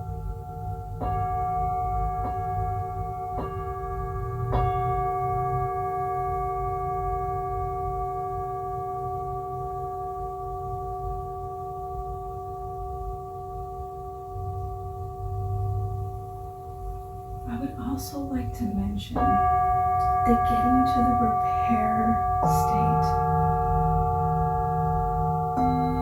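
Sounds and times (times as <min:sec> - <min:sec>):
low steady hum: 0:00.0 - 0:26.0
singing bowl ringing: 0:19.2 - 0:26.0.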